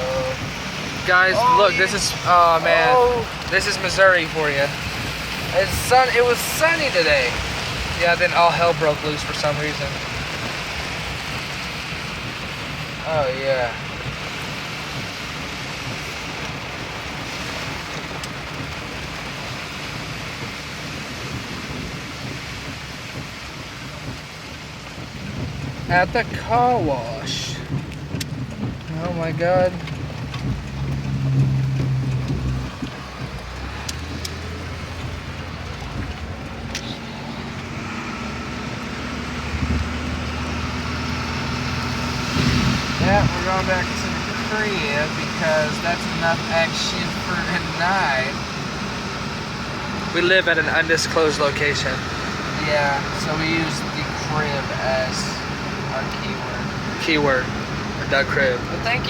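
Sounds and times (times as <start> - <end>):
heavy rain on a car: 0.0 - 59.0.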